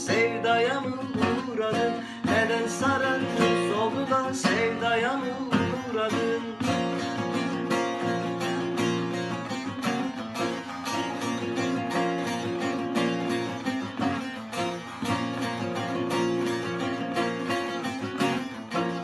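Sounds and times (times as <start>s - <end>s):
acoustic guitar strumming rhythm: 0.0s - 19.0s
plucked lute melody: 0.0s - 19.0s.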